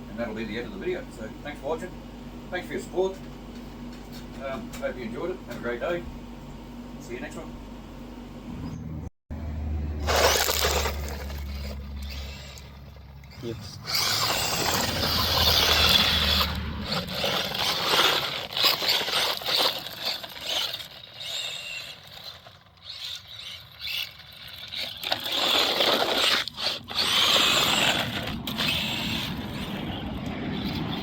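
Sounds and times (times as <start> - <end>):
electric motor whine: 9.4 - 31.0
tyres scrabbling over dirt: 10.0 - 31.0.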